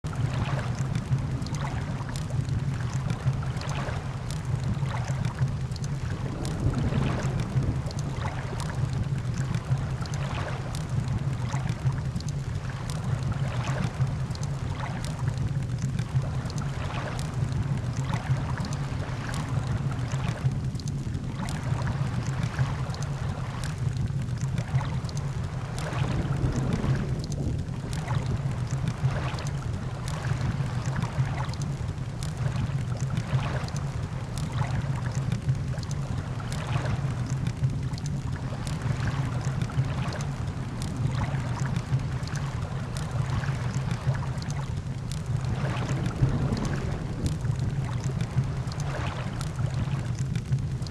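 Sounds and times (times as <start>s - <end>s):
ocean surf: 6.0s - 12.0s, 24.7s - 35.2s, 38.4s - 50.2s
campfire crackling and popping: 37.3s - 39.8s, 44.2s - 50.9s.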